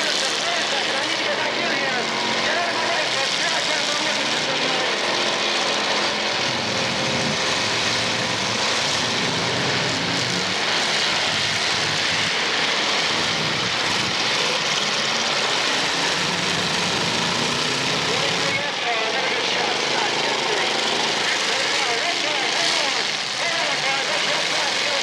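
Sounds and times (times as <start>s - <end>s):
car engines revving together: 0.0s - 25.0s.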